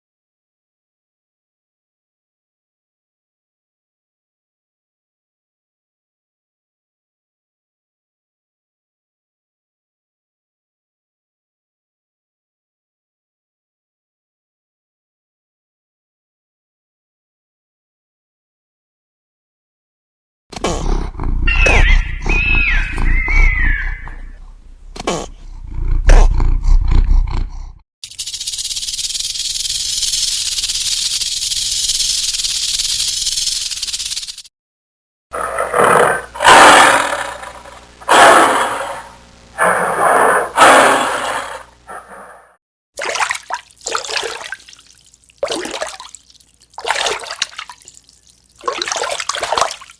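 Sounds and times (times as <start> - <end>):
water splashing: 20.6 - 25.8, 43.0 - 49.9
wild animal calling loudly: 20.6 - 27.6
high wavering whistle-like call: 21.5 - 24.4.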